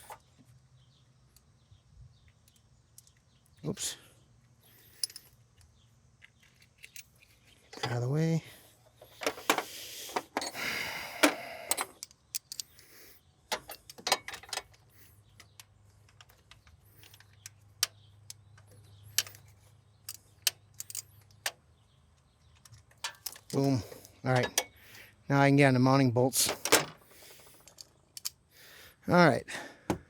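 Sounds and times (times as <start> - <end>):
tools and metal parts clinking: 4.7 - 8.2, 8.8 - 10.6, 11.2 - 12.9, 13.5 - 21.6, 22.2 - 24.8, 26.4 - 28.4.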